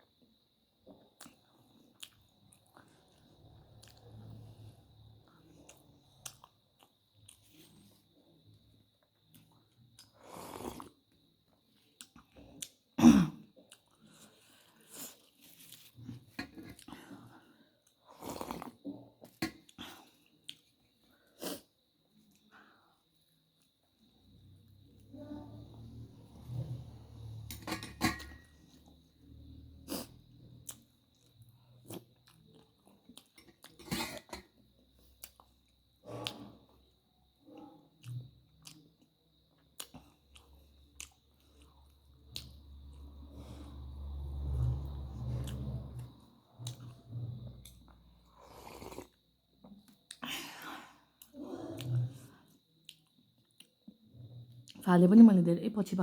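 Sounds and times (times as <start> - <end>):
chewing and crunching food: 0.8 - 54.9
person chewing: 1.0 - 4.5, 29.8 - 34.4, 35.0 - 36.8, 37.6 - 53.8.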